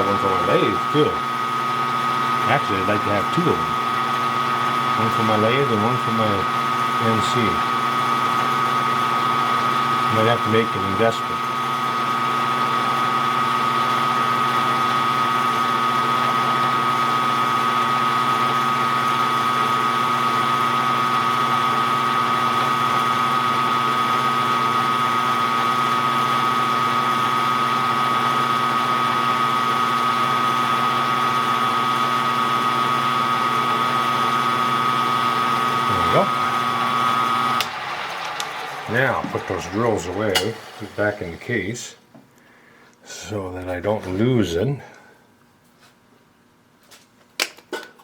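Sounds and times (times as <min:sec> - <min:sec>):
machine motor whine: 0:00.0 - 0:12.4, 0:22.4 - 0:41.9.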